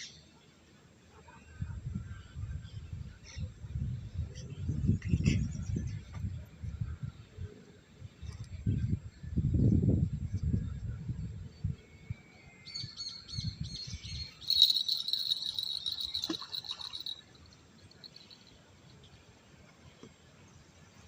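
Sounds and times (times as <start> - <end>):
bird calling: 14.1 - 18.4.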